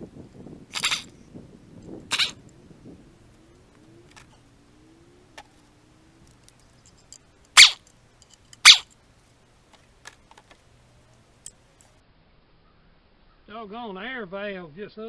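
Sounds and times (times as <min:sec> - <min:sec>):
faint scattered clicks: 0:03.3 - 0:04.4, 0:05.3 - 0:12.0
short loud noise bursts: 0:07.6 - 0:07.8, 0:08.6 - 0:08.8.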